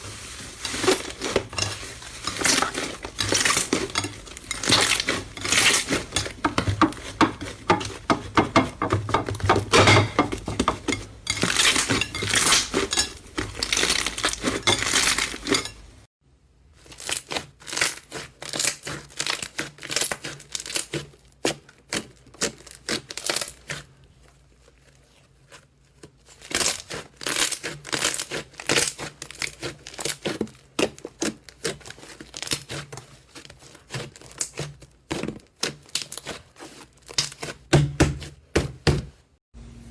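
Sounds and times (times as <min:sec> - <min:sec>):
slime crackling and popping: 0:00.0 - 0:06.4, 0:16.8 - 0:23.8, 0:25.5 - 0:37.6.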